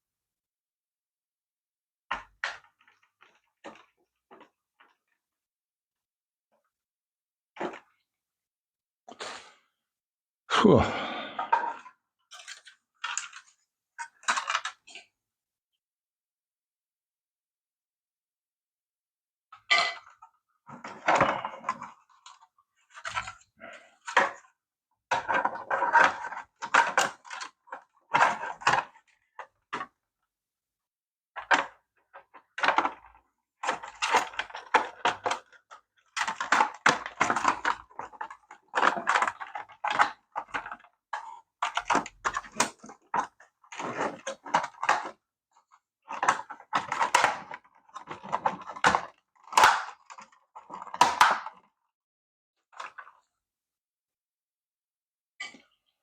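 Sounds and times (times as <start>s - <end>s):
plastic toy parts clicking and rattling: 12.3s - 14.9s, 25.2s - 29.5s, 31.4s - 45.2s, 46.1s - 51.7s.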